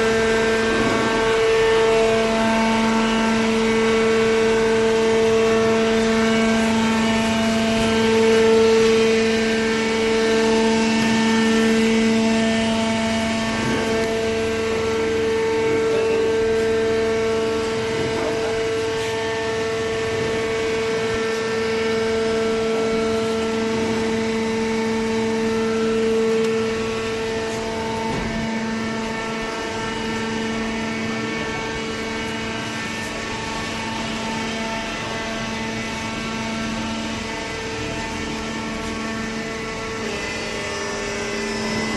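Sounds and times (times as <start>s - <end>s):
baler motor and pump humming: 0.0s - 41.9s.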